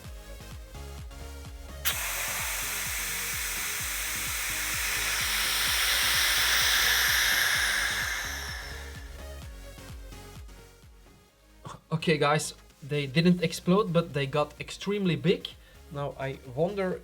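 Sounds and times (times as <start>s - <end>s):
background music with steady beat: 0.0s - 17.0s
air hissing into vacuum chamber: 1.9s - 9.5s.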